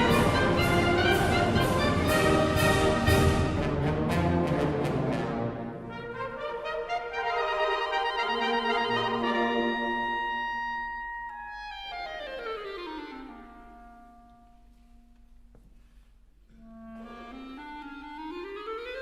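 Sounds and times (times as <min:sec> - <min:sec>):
solo clarinet playing: 0:05.8 - 0:14.7, 0:16.6 - 0:19.0.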